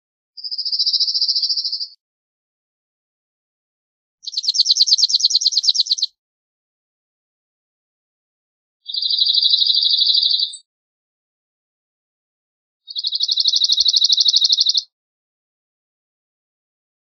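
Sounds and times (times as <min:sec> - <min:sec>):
bunting trilling: 0:04.2 - 0:06.1.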